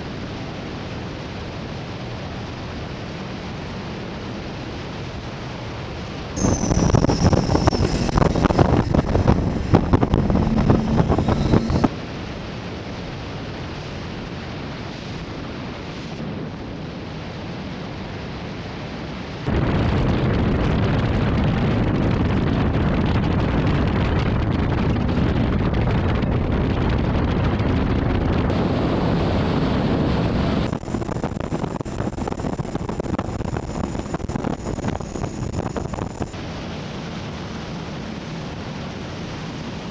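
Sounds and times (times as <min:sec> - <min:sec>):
boat engine: 0:06.4 - 0:11.9, 0:24.0 - 0:36.4
water noise: 0:06.4 - 0:11.9, 0:28.4 - 0:36.4
wind buffeting microphone: 0:06.4 - 0:12.4, 0:19.4 - 0:36.4.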